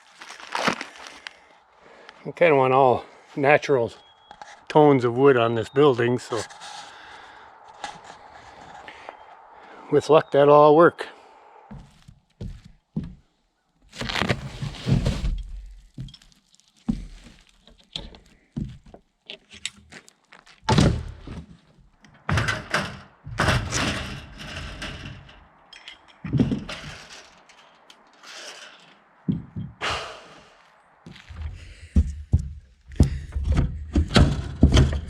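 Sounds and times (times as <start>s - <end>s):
scraping: 13.9s - 30.2s
building work knocks and thunks: 20.7s - 25.3s, 26.2s - 27.2s, 29.2s - 29.8s, 31.4s - 35.0s.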